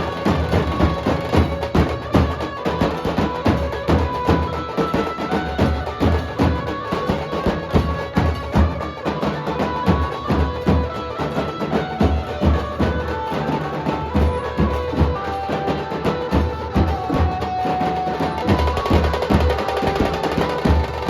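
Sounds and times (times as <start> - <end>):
rapid drum strokes: 0.0 - 21.0.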